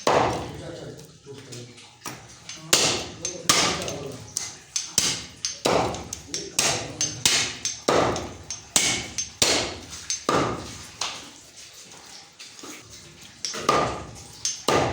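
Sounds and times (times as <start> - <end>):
cleaver chopping on block: 0.0 - 0.5, 2.6 - 4.0, 4.8 - 10.8, 13.5 - 14.9.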